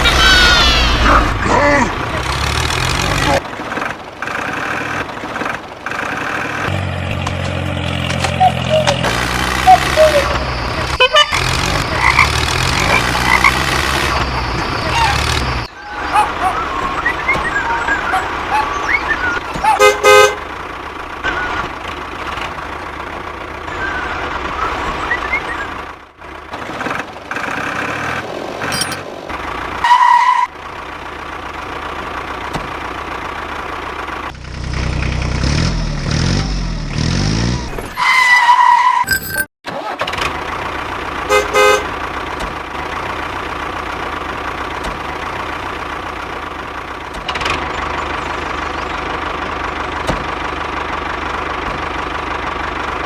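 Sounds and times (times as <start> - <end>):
tractor engine running: 0.0 - 37.7, 39.7 - 53.0
horn toots: 8.4 - 20.6, 41.2 - 42.0.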